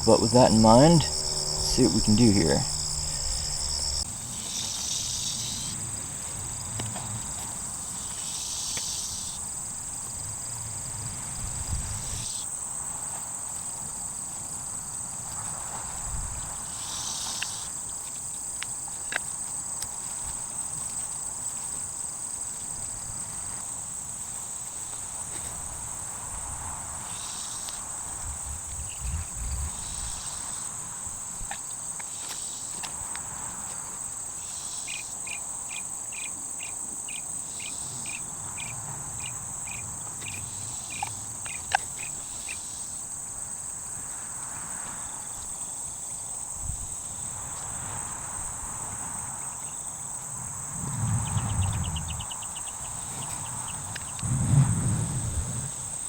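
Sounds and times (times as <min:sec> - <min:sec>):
low insect buzz: 0:00.0 - 0:05.7, 0:25.3 - 0:32.6, 0:49.2 - 0:56.0
insects chorus: 0:00.0 - 0:56.0
low rustles and bumps: 0:28.2 - 0:30.2, 0:50.6 - 0:56.0.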